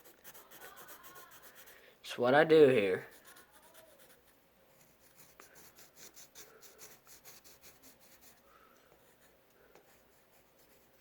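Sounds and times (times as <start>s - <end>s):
drawing tool scratching on paper: 0.0s - 1.7s, 3.0s - 8.4s, 9.0s - 11.0s.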